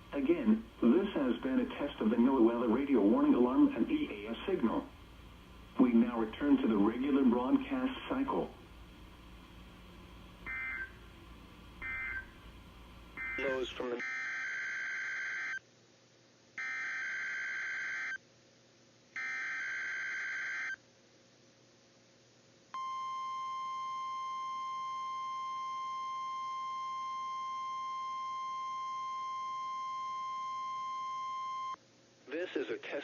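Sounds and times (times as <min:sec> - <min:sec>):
steady warning alarm tone: 0:10.4 - 0:11.0, 0:11.7 - 0:12.5, 0:13.1 - 0:15.6.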